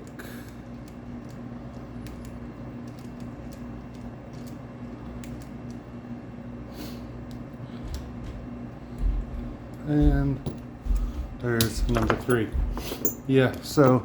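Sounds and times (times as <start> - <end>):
steady low hum: 0.0 - 14.0
lock tools clicking: 11.4 - 14.0.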